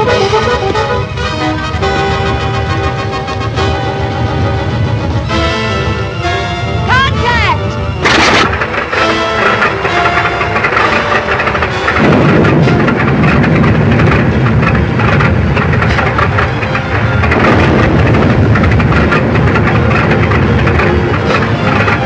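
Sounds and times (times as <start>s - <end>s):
airplane engine running: 0.0s - 22.0s.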